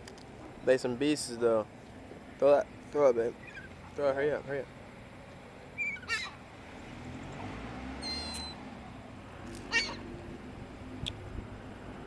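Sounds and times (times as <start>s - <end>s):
seagulls calling: 3.4s - 3.9s, 5.8s - 6.5s, 8.0s - 8.6s, 9.6s - 10.1s.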